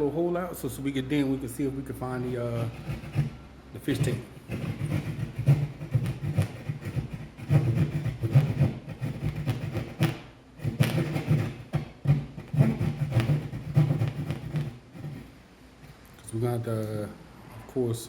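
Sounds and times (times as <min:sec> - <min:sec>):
hand saw cutting drywall: 0:02.2 - 0:15.3.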